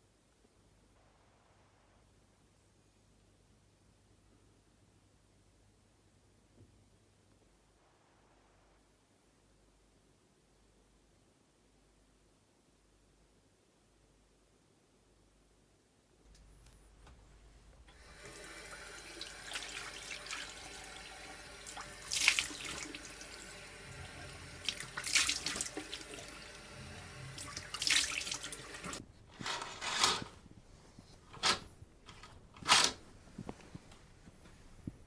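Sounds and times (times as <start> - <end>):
water running into container: 17.9 - 30.3
splashing and knocking: 21.6 - 26.4, 27.3 - 29.0.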